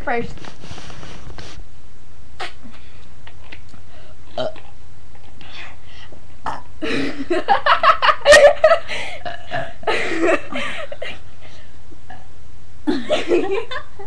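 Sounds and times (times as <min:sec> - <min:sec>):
girls laughing: 0:06.8 - 0:11.2, 0:12.9 - 0:14.0.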